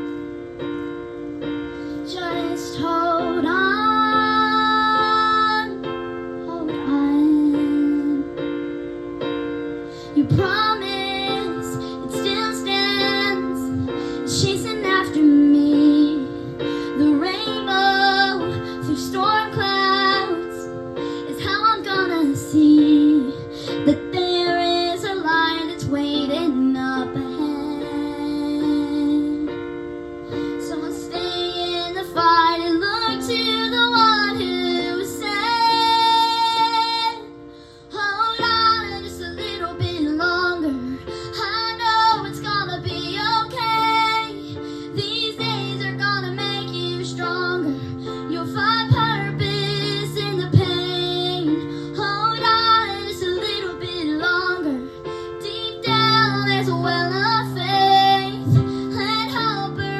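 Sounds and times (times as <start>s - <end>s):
women singing: 38.0s - 54.9s.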